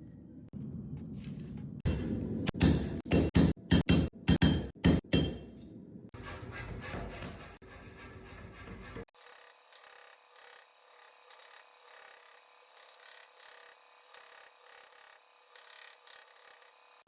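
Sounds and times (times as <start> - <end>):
hand file rubbing on workpiece: 6.2 - 13.7.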